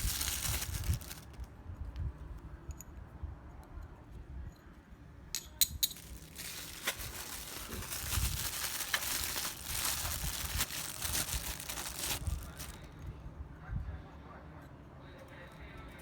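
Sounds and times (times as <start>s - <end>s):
packaging crinkling: 0.0s - 1.4s, 5.9s - 12.8s.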